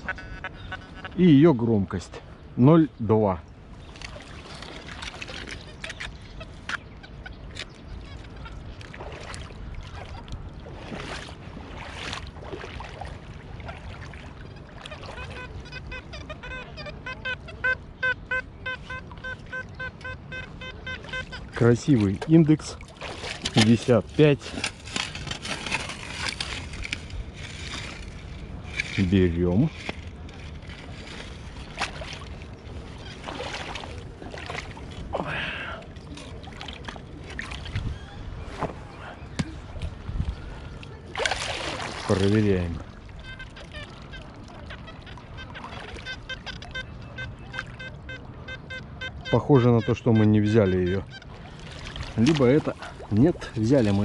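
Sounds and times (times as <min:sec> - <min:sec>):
water splashing: 0:03.7 - 0:06.9, 0:07.5 - 0:54.0
metal detector beeping: 0:15.2 - 0:21.6, 0:45.5 - 0:51.2
sand scoop digging in water: 0:23.0 - 0:32.0.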